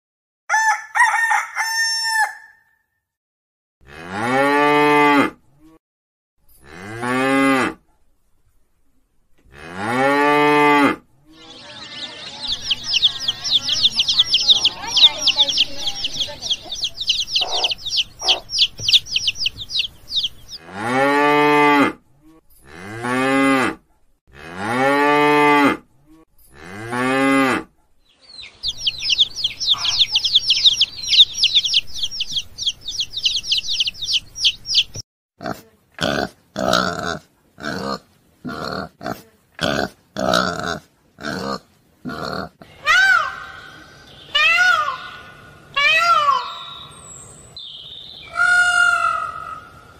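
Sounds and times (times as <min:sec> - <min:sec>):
cow mooing: 0:03.8 - 0:05.4, 0:20.6 - 0:22.0, 0:22.7 - 0:25.8
rapid high-pitched chirping: 0:12.0 - 0:20.6, 0:28.4 - 0:35.0
short calls: 0:28.6 - 0:34.9.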